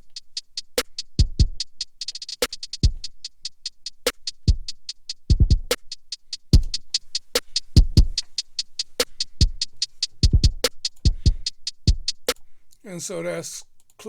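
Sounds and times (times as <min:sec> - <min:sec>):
closed hi-hats ticking: 0:00.0 - 0:12.8
deep kick drums: 0:01.2 - 0:01.6, 0:04.5 - 0:05.8, 0:06.6 - 0:06.9, 0:07.7 - 0:08.2, 0:09.4 - 0:12.2.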